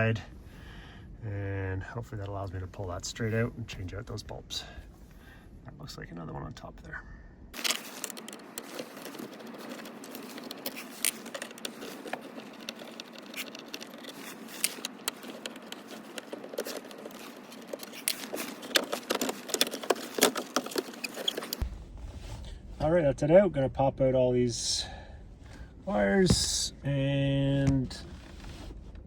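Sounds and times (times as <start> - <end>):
screws and parts clicking and rattling: 7.6 - 21.6.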